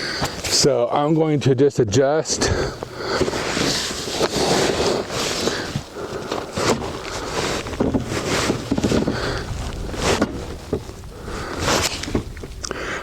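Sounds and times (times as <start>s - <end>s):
wind buffeting microphone: 7.0s - 12.9s.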